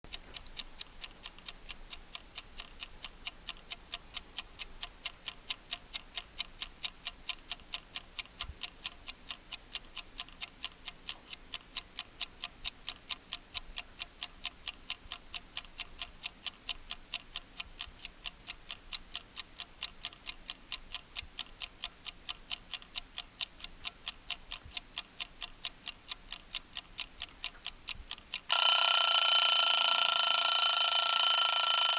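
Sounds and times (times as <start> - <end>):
timer ticking: 0.4 - 31.9
timer alarm ringing: 28.5 - 31.9.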